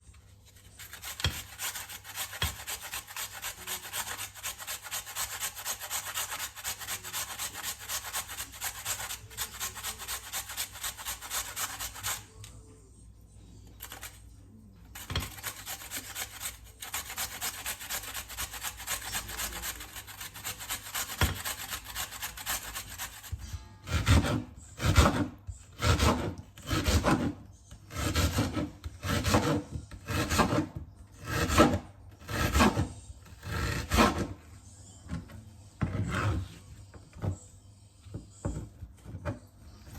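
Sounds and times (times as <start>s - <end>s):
food grated on hand grater: 0.5s - 12.4s, 13.8s - 14.2s, 15.0s - 34.4s.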